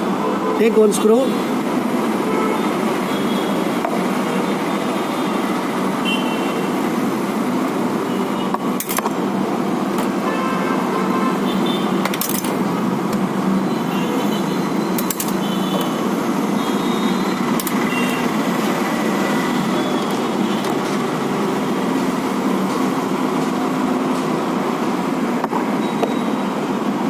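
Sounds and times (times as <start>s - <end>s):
road traffic rumble: 0.0s - 27.0s
sharp clicks: 15.0s - 15.9s.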